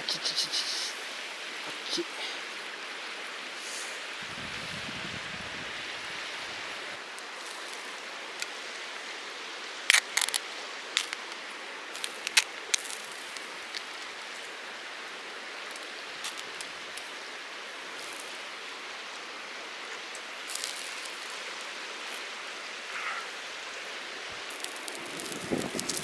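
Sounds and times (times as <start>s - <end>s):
mountain stream rushing: 2.4s - 26.0s
campfire popping and crackling: 9.9s - 17.2s, 24.3s - 26.0s.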